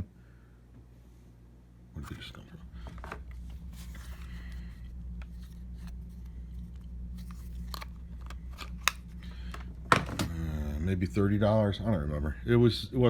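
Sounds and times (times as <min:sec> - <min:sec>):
steady low hum: 0:00.0 - 0:13.0
plastic parts clicking and crinkling: 0:05.2 - 0:10.3.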